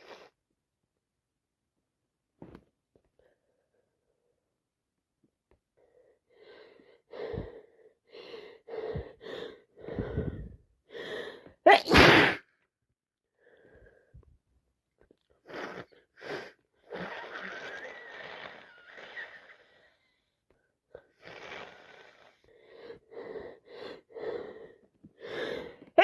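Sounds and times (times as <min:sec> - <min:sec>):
woman sniffing: 0:00.0 - 0:00.4
woman catching breaths: 0:05.8 - 0:11.6, 0:22.5 - 0:26.0
woman sneezing: 0:11.7 - 0:12.5.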